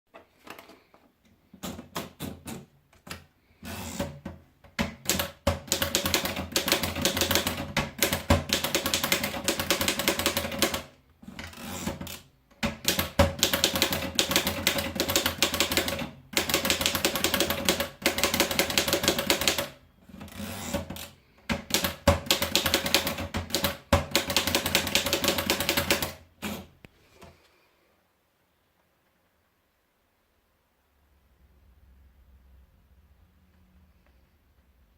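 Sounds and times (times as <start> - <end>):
typewriter key strikes: 4.8 - 10.8, 11.9 - 19.7, 20.8 - 26.2.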